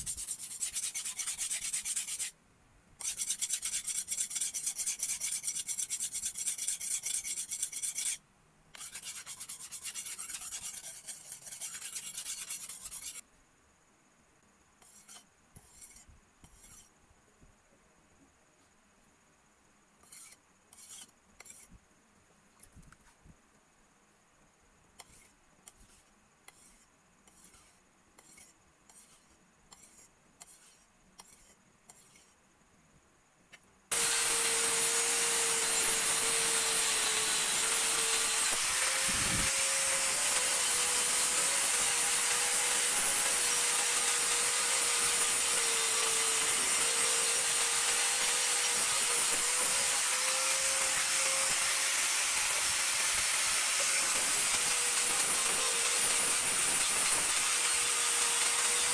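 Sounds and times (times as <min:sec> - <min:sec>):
file rasping on blade: 0:00.0 - 0:02.4, 0:03.0 - 0:13.2, 0:14.8 - 0:16.9, 0:20.0 - 0:21.7, 0:25.0 - 0:32.4, 0:33.9 - 0:58.9
power tool grinding: 0:33.9 - 0:58.9.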